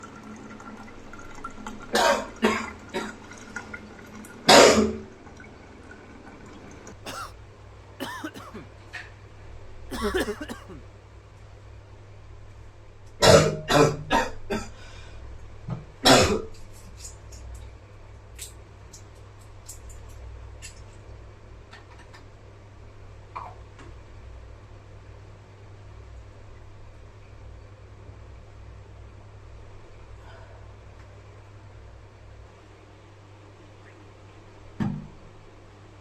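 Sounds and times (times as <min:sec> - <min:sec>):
man coughing: 0:07.1 - 0:07.3, 0:08.0 - 0:08.6, 0:09.9 - 0:10.8.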